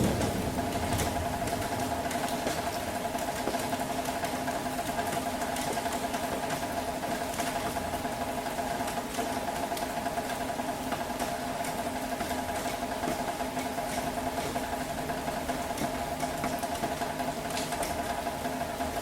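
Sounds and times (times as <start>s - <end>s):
rain falling: 0.0s - 9.0s
steady mechanical hum: 0.0s - 19.0s.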